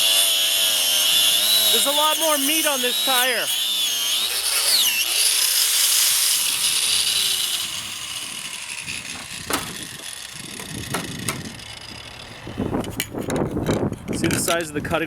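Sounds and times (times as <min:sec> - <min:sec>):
angle grinder grinding rubber: 0:00.0 - 0:14.2
sharp knocks: 0:09.1 - 0:09.8, 0:10.9 - 0:11.5.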